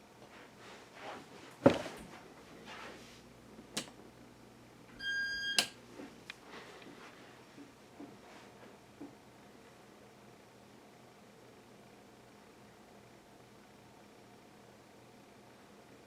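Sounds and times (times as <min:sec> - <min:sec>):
faint steady hum: 0:00.0 - 0:16.0.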